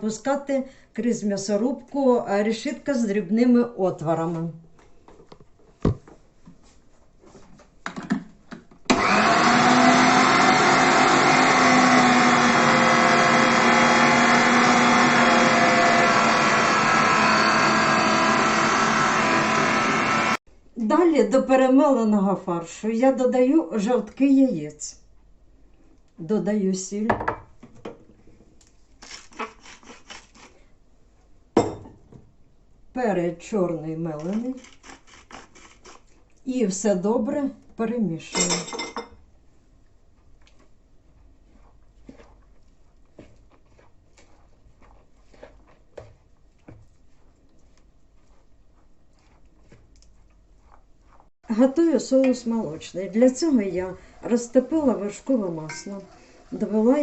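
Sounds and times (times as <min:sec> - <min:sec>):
knocks and clatter of setting up: 0:07.8 - 0:08.8
electric meat grinder running: 0:08.9 - 0:20.4.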